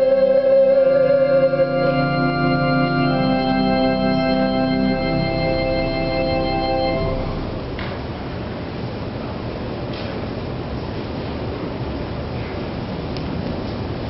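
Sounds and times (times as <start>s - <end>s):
organ playing sustained chords: 0.0s - 8.5s.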